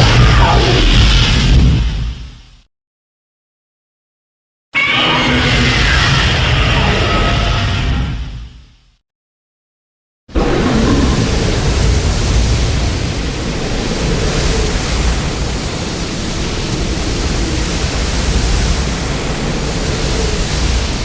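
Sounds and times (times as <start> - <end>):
rush of noise: 10.3 - 21.0
deep rumble: 10.4 - 13.5.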